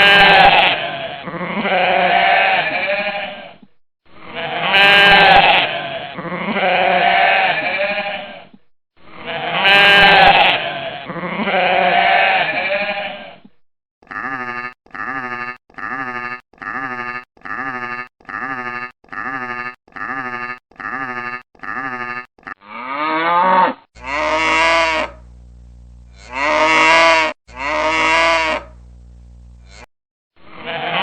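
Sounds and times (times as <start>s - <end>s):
farm animals calling: 9.2s - 13.3s, 14.1s - 25.4s, 26.1s - 28.8s, 29.6s - 29.9s.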